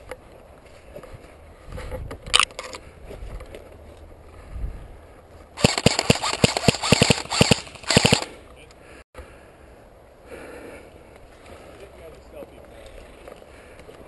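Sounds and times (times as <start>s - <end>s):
airsoft guns firing bursts: 5.6s - 8.4s.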